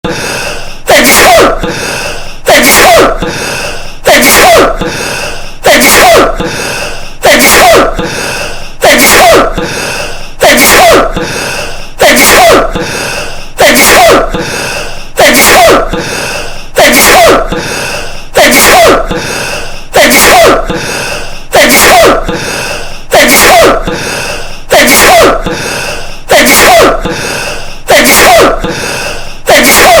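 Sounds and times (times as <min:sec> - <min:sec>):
man sneezing: 0:00.9 - 0:01.6, 0:02.5 - 0:03.2, 0:04.0 - 0:04.8, 0:05.6 - 0:06.3, 0:07.2 - 0:08.0, 0:10.4 - 0:11.2, 0:12.0 - 0:12.8, 0:13.6 - 0:14.3, 0:16.8 - 0:17.5, 0:18.4 - 0:19.1, 0:19.9 - 0:20.6, 0:23.1 - 0:23.9, 0:24.7 - 0:25.5, 0:29.5 - 0:30.0.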